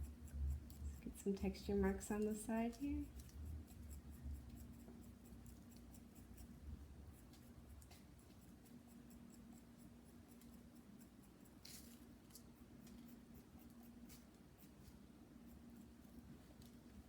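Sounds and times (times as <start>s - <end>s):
tool scratching clay: 0.0s - 16.0s
low steady hum: 0.0s - 17.0s.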